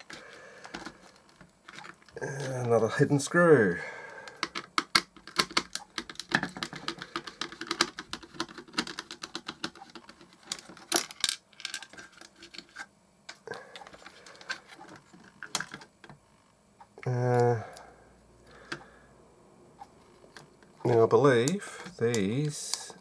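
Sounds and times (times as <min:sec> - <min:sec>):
plastic case parts knocking: 0:04.4 - 0:12.0.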